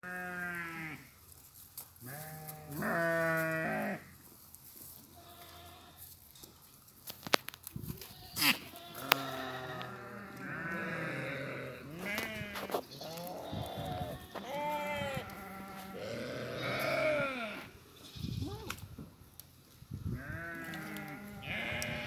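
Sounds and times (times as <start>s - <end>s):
goats bleating: 2.1s - 4.0s, 5.2s - 6.0s, 8.1s - 18.7s, 20.2s - 22.0s.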